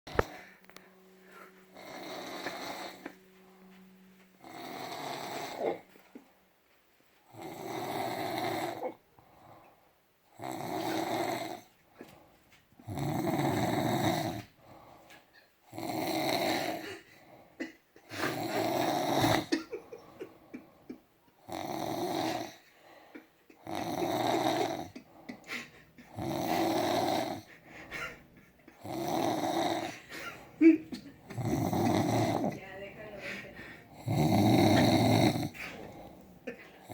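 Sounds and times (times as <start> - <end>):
quiet breaths: 0.1 - 36.9
man snoring: 1.7 - 3.2, 4.4 - 5.8, 7.3 - 9.6, 10.3 - 11.7, 12.8 - 14.8, 15.7 - 17.4, 18.2 - 27.6, 28.7 - 30.5, 31.2 - 32.6, 33.8 - 36.2.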